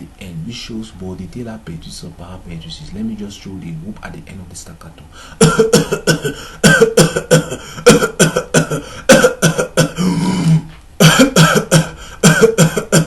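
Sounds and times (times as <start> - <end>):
short rapid coughs: 5.4 - 13.0.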